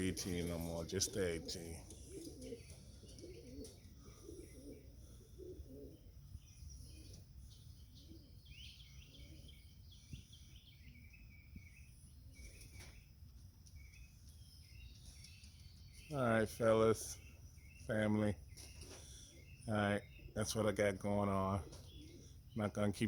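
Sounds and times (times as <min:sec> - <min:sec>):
pigeon cooing: 0:00.0 - 0:10.2, 0:21.5 - 0:22.5
small birds chirping: 0:00.0 - 0:23.0.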